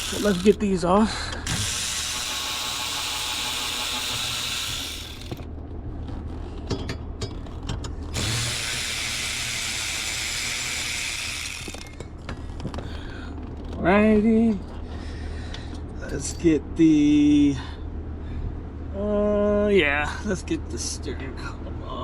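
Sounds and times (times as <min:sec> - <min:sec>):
power tool spinning: 0:00.0 - 0:00.7, 0:01.5 - 0:05.5, 0:08.1 - 0:12.9.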